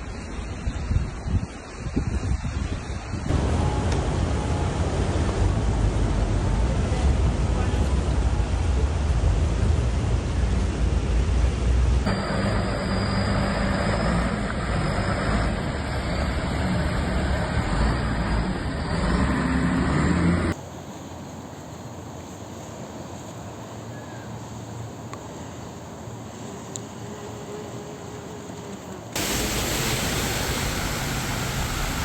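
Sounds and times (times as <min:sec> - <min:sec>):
rain and water rushing: 0:00.0 - 0:19.5, 0:29.1 - 0:32.0
road traffic: 0:03.3 - 0:20.7, 0:29.2 - 0:32.0.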